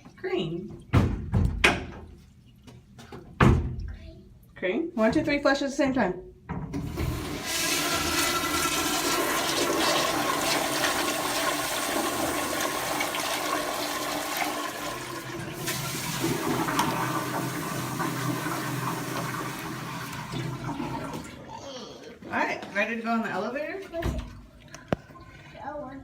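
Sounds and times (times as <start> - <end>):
toilets flushing: 6.7 - 21.6.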